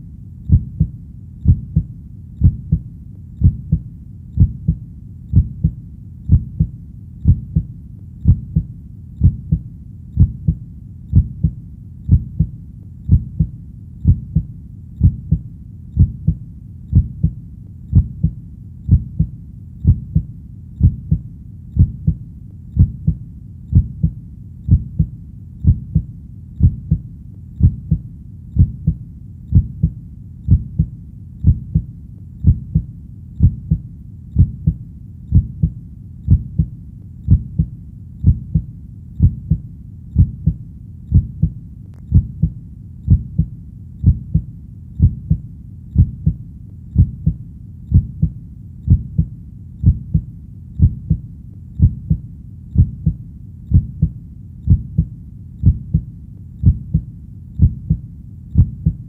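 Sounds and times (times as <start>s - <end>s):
heartbeat: 0.0s - 59.0s.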